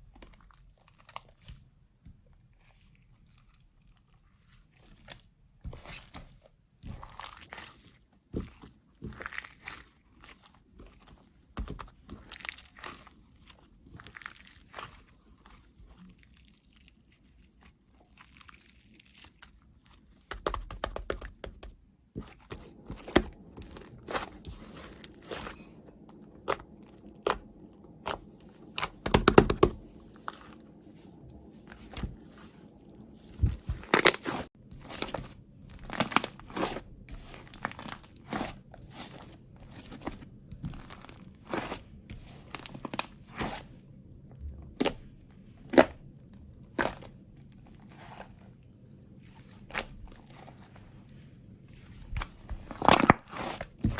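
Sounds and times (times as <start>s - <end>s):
slime squished by hand: 7.0s - 34.5s.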